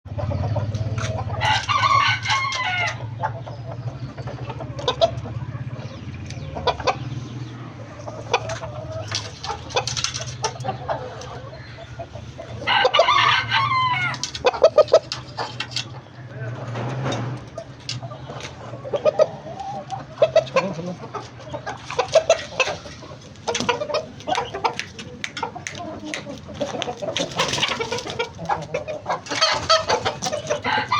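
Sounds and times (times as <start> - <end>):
rooster clucking: 0.1 - 30.9
rooster crowing: 1.4 - 3.2, 12.6 - 14.3, 30.5 - 30.9.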